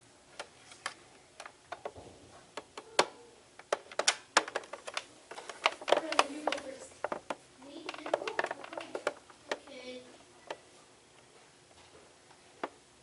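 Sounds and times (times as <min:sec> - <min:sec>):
sharp clicks and knocks: 0:00.3 - 0:09.7.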